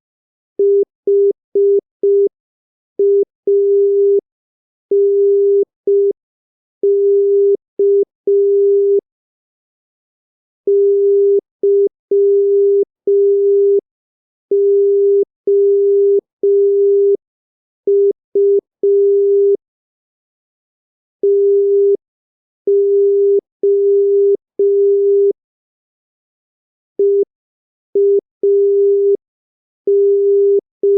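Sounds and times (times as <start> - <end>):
morse code beeps: 3.0 - 4.2, 6.8 - 9.0, 10.7 - 13.8, 14.5 - 17.2, 17.9 - 19.6, 21.2 - 22.0, 22.7 - 25.3, 27.0 - 27.2, 28.0 - 29.2, 29.9 - 30.9.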